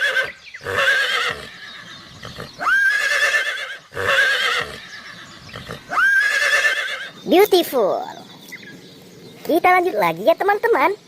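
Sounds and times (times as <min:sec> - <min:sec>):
horse whinnying: 0:00.0 - 0:07.2.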